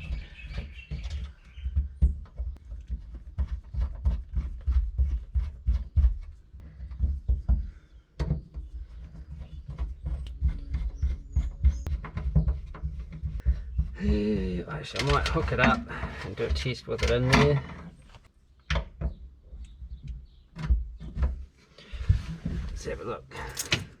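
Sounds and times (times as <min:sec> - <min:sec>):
dull low knocks: 0:00.0 - 0:16.7.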